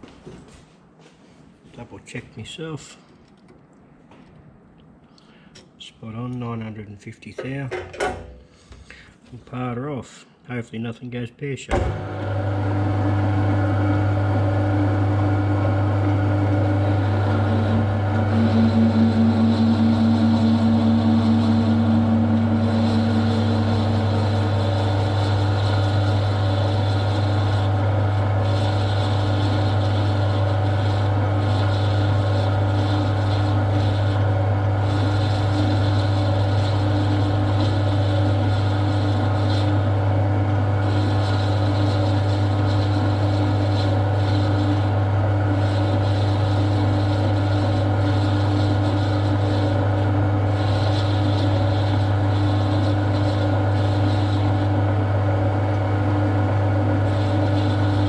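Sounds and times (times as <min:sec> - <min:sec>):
lathe machine hum: 0:11.8 - 0:58.0
lathe tool cutting noise: 0:11.9 - 0:58.0.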